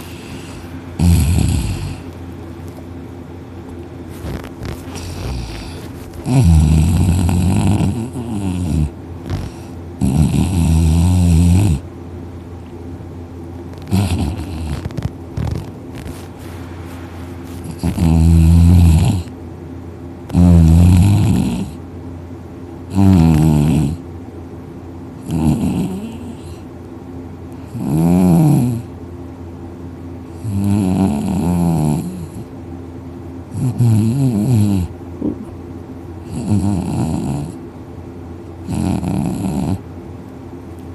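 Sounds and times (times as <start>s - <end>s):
man snoring loudly: 0.0s - 2.0s, 4.3s - 11.8s, 13.9s - 15.6s, 17.7s - 19.3s, 20.3s - 21.8s, 22.9s - 24.0s, 25.2s - 26.6s, 27.7s - 28.9s, 30.4s - 32.4s, 33.6s - 34.9s, 36.3s - 37.6s, 38.7s - 39.8s.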